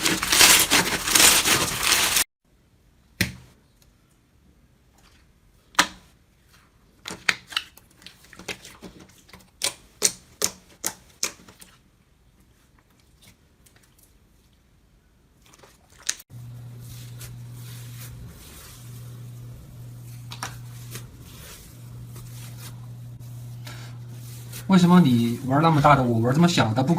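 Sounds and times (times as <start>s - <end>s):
low hum with faint crackling: 16.0s - 26.9s.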